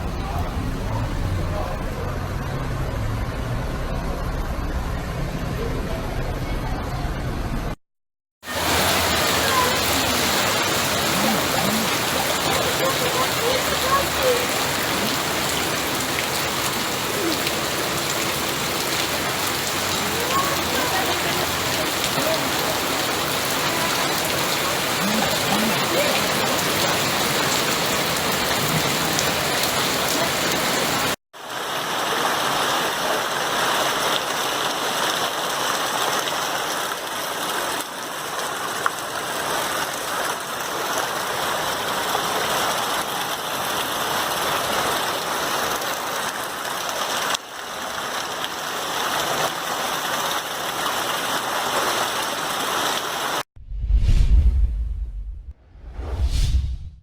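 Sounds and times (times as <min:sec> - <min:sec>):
heavy rain pouring: 0:00.0 - 0:06.4, 0:08.4 - 0:53.4
deep whoosh: 0:53.6 - 0:57.0.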